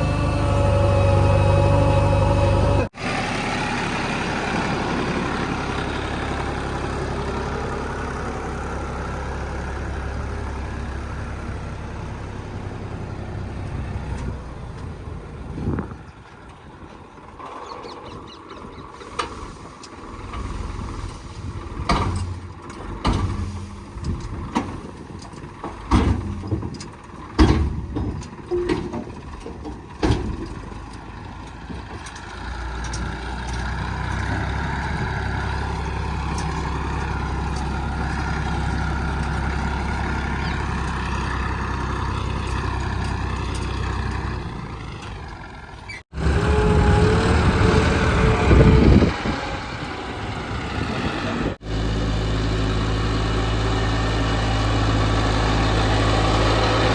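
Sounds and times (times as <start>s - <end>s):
diesel engine drone under load: 0.0s - 56.9s
metallic knocks and clanks: 21.8s - 31.0s.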